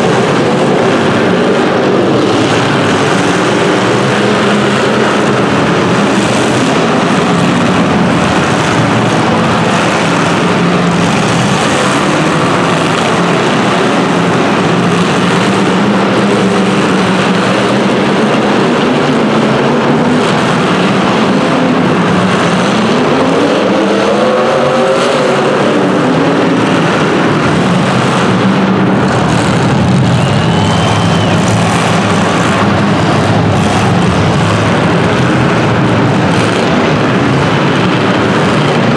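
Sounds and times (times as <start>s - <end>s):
engine revving: 0.0s - 38.9s
race car engines running: 0.0s - 38.9s.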